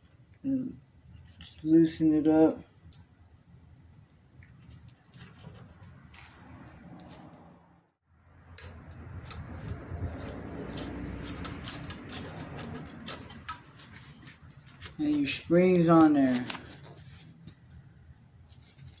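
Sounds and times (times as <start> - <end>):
metal clicks and handling noise: 8.5 - 16.6.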